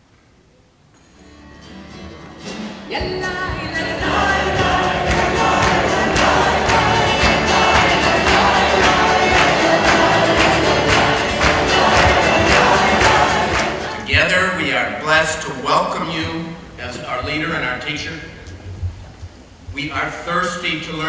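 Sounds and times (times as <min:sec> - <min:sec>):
instrumental accompaniment with beat: 0:02.4 - 0:14.2
choir singing: 0:03.1 - 0:14.3.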